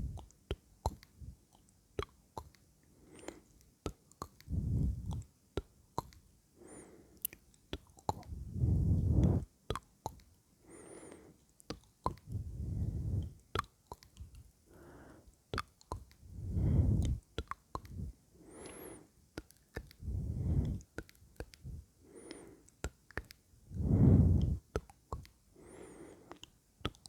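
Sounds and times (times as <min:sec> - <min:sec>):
wet mouth clicks and lip smacks: 0:00.0 - 0:06.3, 0:07.2 - 0:10.4, 0:11.1 - 0:14.5, 0:15.3 - 0:25.4, 0:26.2 - 0:27.0
breaths into microphone: 0:04.5 - 0:05.2, 0:08.3 - 0:09.5, 0:12.2 - 0:13.4, 0:16.3 - 0:17.2, 0:17.9 - 0:19.1, 0:20.0 - 0:20.8, 0:23.7 - 0:24.7.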